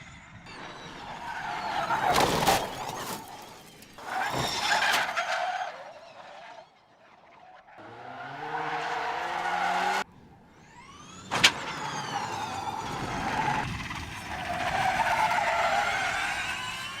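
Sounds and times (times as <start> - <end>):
race car engine revving: 7.1 - 17.0.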